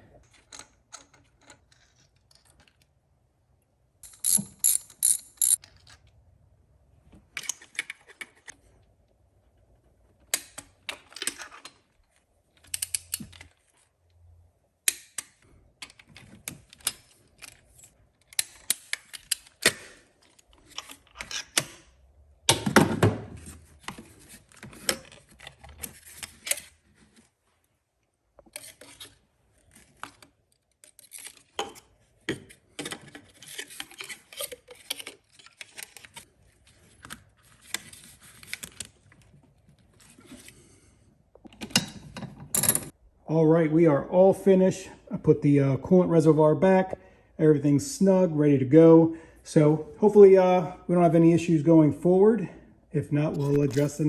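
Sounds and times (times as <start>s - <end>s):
ratchet wrench clicking: 4.0s - 5.6s
tool clattering: 4.0s - 5.6s.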